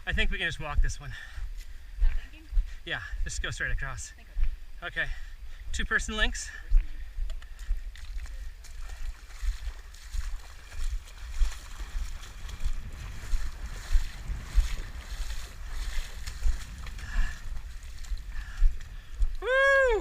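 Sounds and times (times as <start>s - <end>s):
wind buffeting microphone: 6.7s - 20.0s
splashing of legs wading: 7.3s - 20.0s.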